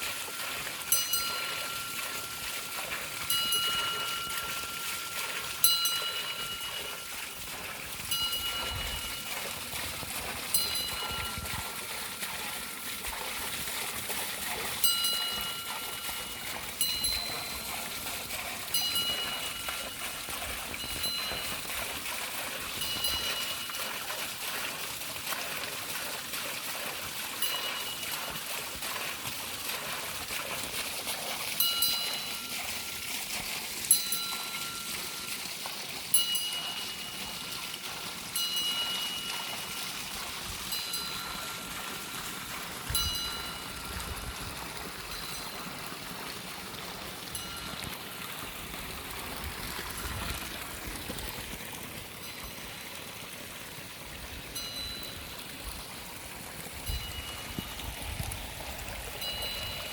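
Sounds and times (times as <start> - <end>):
water trickling and splashing: 0.0 - 59.9
bell ringing: 0.9 - 2.7, 3.3 - 7.2, 8.1 - 9.3, 14.8 - 17.8, 18.7 - 20.2, 20.8 - 21.7, 22.8 - 23.8, 31.6 - 32.7, 33.9 - 35.3, 36.1 - 37.6, 38.4 - 39.9, 40.7 - 41.5, 43.0 - 43.8, 59.2 - 59.9.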